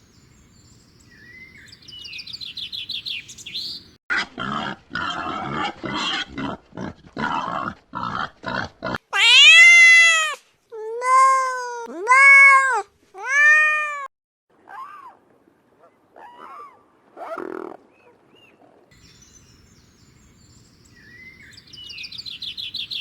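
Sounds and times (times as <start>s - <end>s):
cat meowing: 9.1s - 10.4s.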